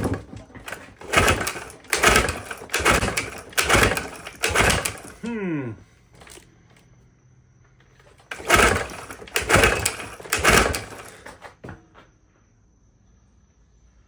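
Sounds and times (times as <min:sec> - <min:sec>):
outboard starter rope pulls: 0:00.0 - 0:05.3, 0:06.2 - 0:06.4, 0:08.0 - 0:11.8
engine spinning over: 0:00.0 - 0:06.4, 0:08.0 - 0:11.8.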